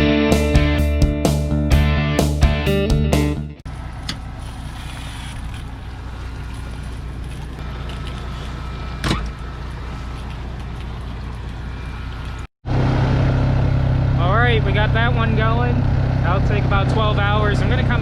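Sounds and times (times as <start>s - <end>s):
engine humming: 3.7s - 18.0s.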